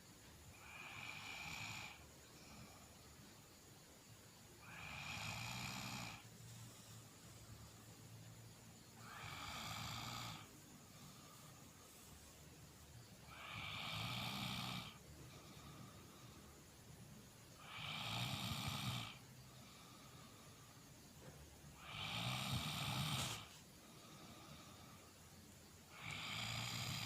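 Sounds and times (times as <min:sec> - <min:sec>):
quiet breathing: 0:00.0 - 0:27.0
man snoring loudly: 0:00.6 - 0:02.8, 0:04.6 - 0:06.7, 0:09.0 - 0:11.6, 0:13.3 - 0:15.9, 0:17.6 - 0:20.2, 0:21.8 - 0:25.0, 0:25.9 - 0:27.0.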